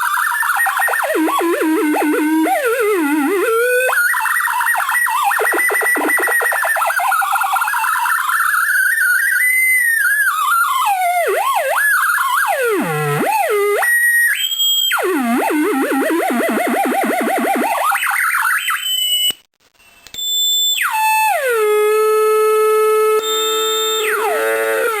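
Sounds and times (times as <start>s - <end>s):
warbling electronic tones: 0.0s - 9.3s.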